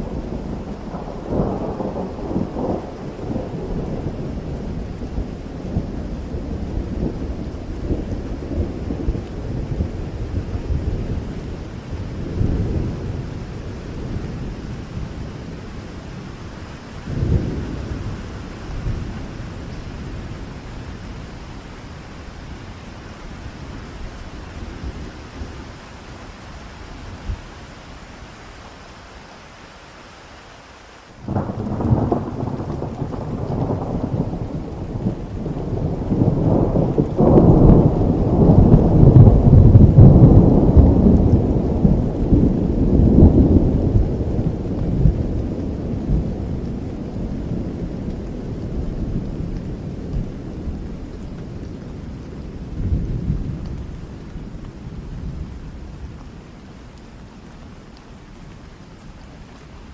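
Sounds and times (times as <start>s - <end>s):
thunder rumbling: 0.0s - 27.9s, 31.2s - 58.6s
steady rain: 0.0s - 59.9s.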